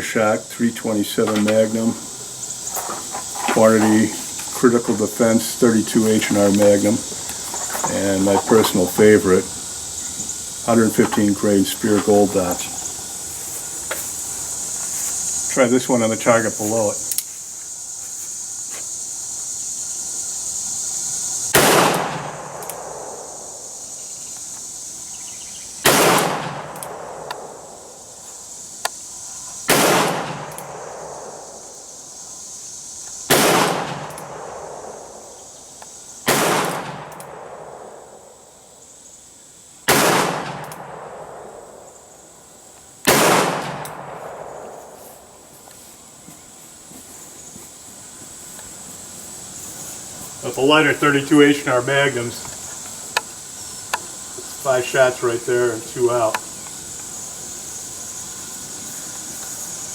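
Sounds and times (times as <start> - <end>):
revolver shots echoing: 43.1 - 44.2.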